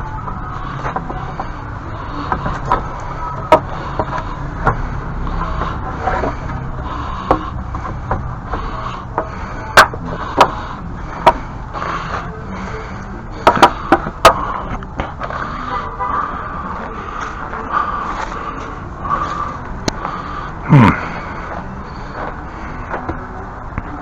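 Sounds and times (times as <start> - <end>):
steady low rumble: 0.0 - 24.0
sharp knocks and clatter: 7.2 - 10.6, 13.4 - 14.4.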